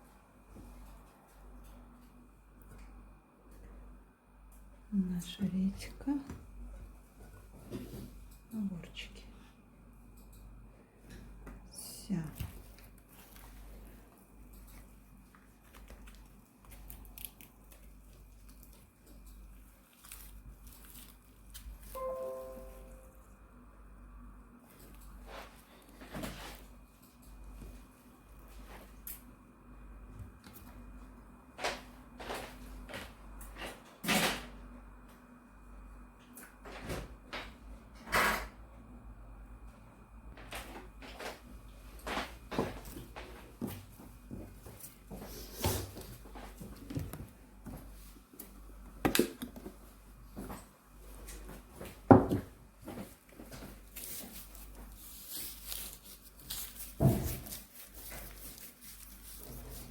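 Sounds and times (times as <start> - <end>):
low steady hum: 0.0 - 33.9
kitchen knocks and rustles: 51.3 - 53.8, 56.8 - 58.4.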